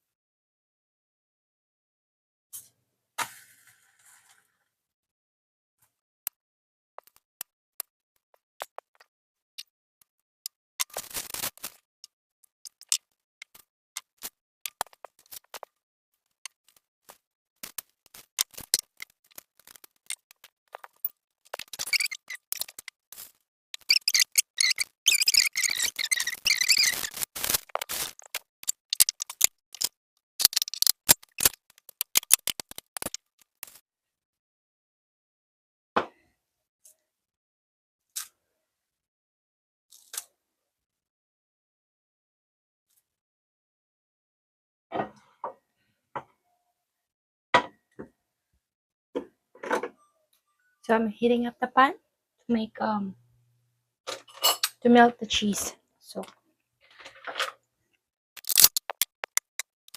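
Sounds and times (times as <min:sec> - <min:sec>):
flatbread crackling in a pan: 0:10.8 - 0:11.9, 0:26.0 - 0:33.8
high squeak: 0:21.6 - 0:22.8, 0:23.8 - 0:27.3
kitchen utensils clattering: 0:54.1 - 0:54.8.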